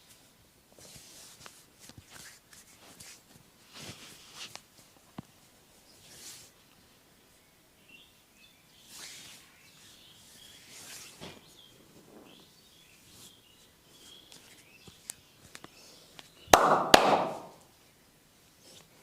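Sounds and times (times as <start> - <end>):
hands rubbing bare skin: 0.8 - 5.0
sharp smacks on skin: 16.6 - 17.6.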